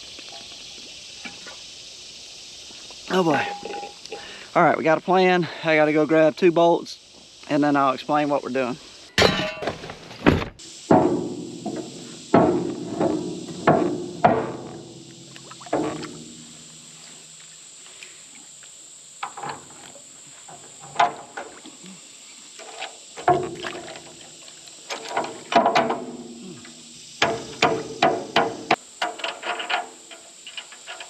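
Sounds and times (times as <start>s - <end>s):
metal clanking and banging: 3.4s - 4.0s, 9.2s - 17.0s, 22.6s - 24.2s, 24.9s - 26.4s, 27.2s - 31.0s.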